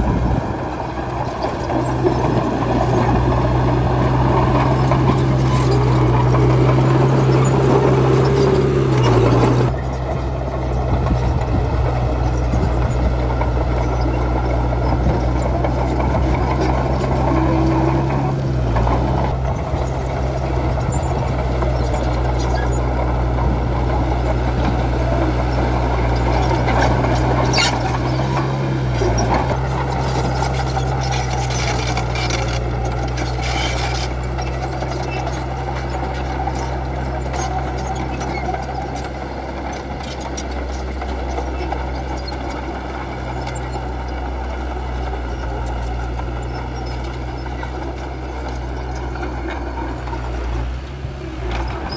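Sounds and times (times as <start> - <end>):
bulldozer diesel engine running: 0.0 - 51.9.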